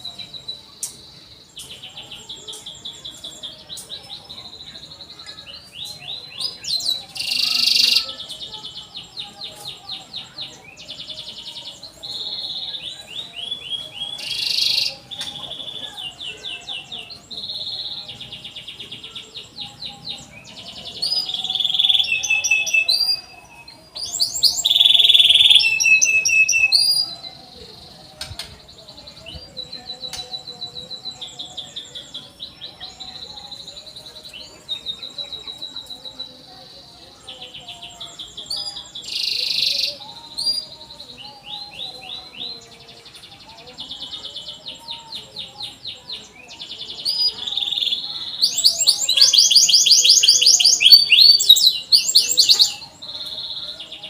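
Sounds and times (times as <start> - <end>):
canary singing trills: 0.0 - 54.0.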